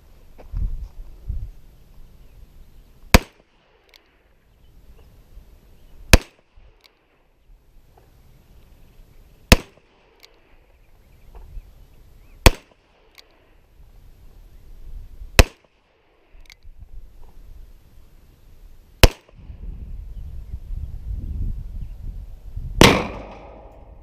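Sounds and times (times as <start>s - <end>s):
revolver gunshots: 3.1s - 3.5s, 6.1s - 6.4s, 9.5s - 10.2s, 12.4s - 12.8s, 19.0s - 19.4s, 22.8s - 24.0s.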